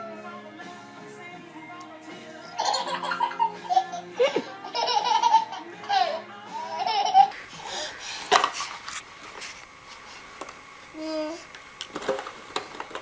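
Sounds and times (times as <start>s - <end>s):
background music: 0.0s - 7.8s
baby laughing: 2.4s - 8.6s.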